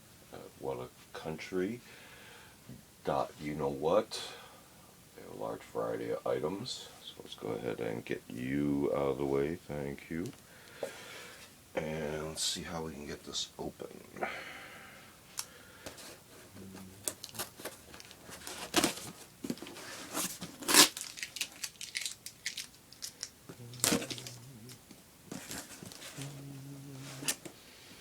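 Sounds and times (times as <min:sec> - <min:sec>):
packaging tearing and crinkling: 0:17.0 - 0:24.8.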